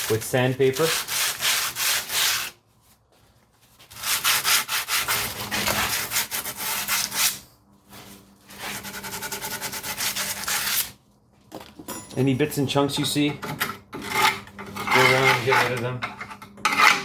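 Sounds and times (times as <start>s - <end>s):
sandpaper rubbing on brake shoes: 0.0s - 2.6s, 3.8s - 11.0s.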